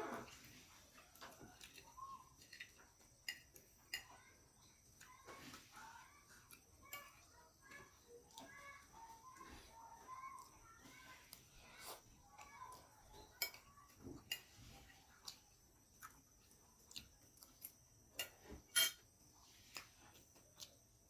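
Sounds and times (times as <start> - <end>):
faint bird chirps: 0.6 - 2.8
cutlery clinking on a plate: 2.4 - 4.2, 13.2 - 14.8, 18.1 - 19.1.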